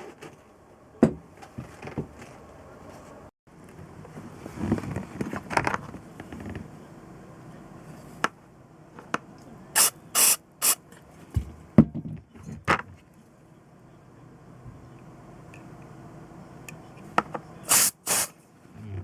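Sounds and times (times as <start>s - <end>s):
hissing spray bursts: 9.8s - 10.8s, 17.7s - 18.4s.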